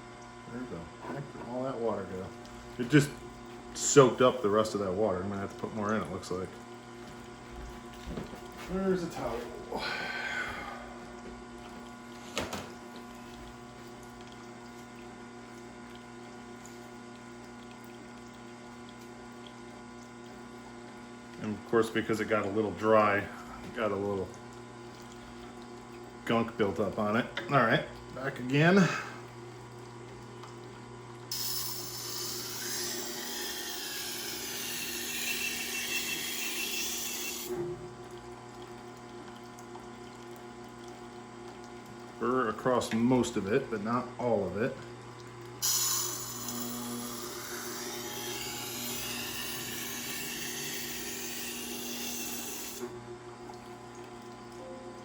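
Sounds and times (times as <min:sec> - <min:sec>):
water-cooled sharpener humming: 0:00.0 - 0:55.0
sharpener motor humming: 0:31.3 - 0:37.5, 0:45.6 - 0:52.9.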